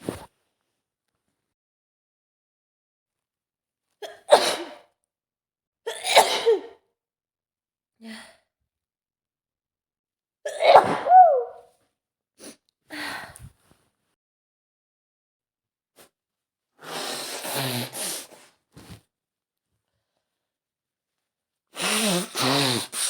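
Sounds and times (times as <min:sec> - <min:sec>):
woman sneezing: 0:05.9 - 0:06.8, 0:10.5 - 0:11.6.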